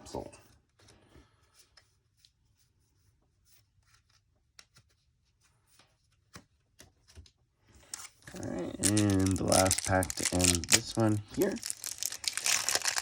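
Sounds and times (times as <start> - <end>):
trading cards and packaging rustling: 7.8 - 13.0.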